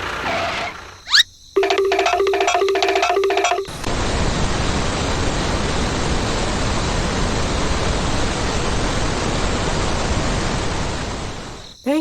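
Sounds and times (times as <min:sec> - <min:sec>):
loud rushing hiss: 0:03.8 - 0:11.6.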